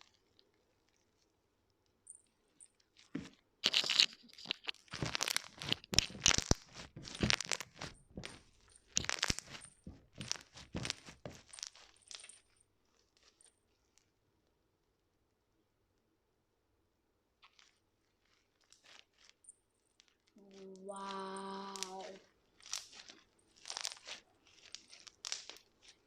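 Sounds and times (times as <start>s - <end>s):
slime crackling and popping: 3.6s - 12.3s, 20.0s - 26.0s.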